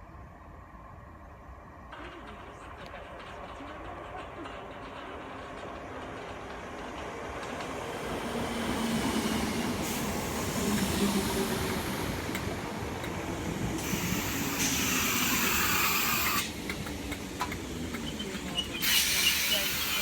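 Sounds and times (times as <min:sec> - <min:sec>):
electric train rumbling: 0:00.0 - 0:20.0
train hiss: 0:07.9 - 0:20.0.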